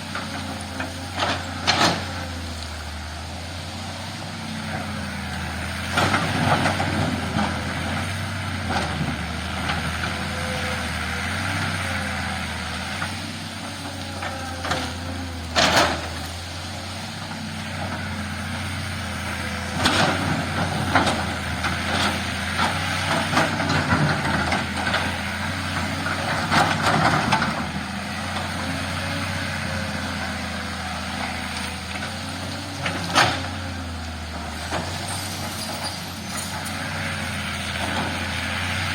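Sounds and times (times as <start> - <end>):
heavy diesel engine running: 0.0 - 38.9.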